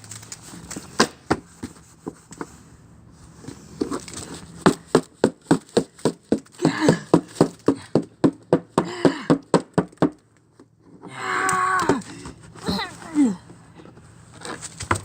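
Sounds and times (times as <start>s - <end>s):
rapid knocks or slaps: 4.6s - 10.2s.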